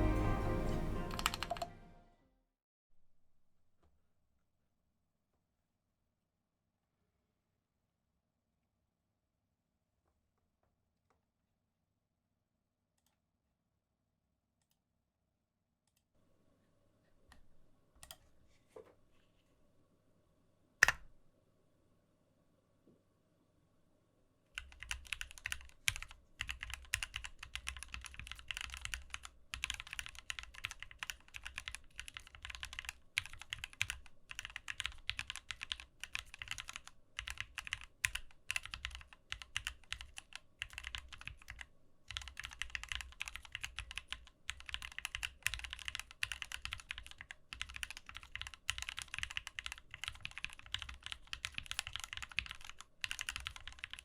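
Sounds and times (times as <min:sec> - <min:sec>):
mechanical keyboard typing: 0:01.0 - 0:01.8, 0:20.8 - 0:21.1, 0:24.6 - 0:54.0.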